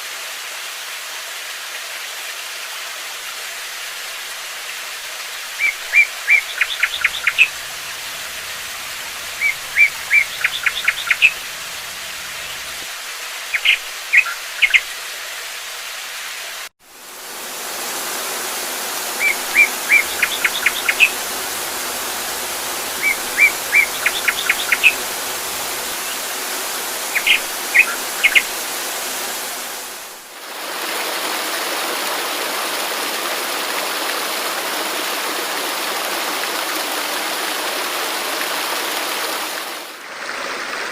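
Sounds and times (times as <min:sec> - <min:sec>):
rushing water: 0:00.0 - 0:40.9
songbird chirping: 0:05.6 - 0:12.8, 0:13.5 - 0:14.9, 0:19.1 - 0:29.8.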